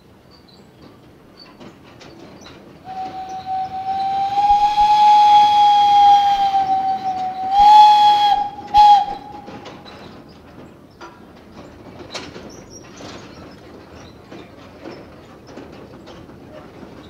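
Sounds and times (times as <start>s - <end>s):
steam locomotive whistle: 2.8s - 10.0s.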